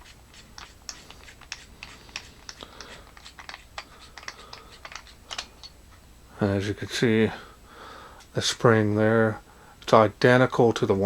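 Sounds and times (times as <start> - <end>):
clicks and taps handling flashlight: 1.5 - 5.7.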